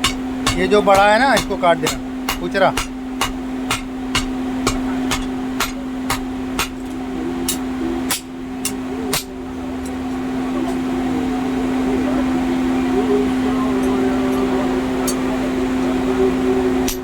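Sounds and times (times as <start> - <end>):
hammer striking metal: 0.0 - 9.4
low machine hum: 0.0 - 17.0.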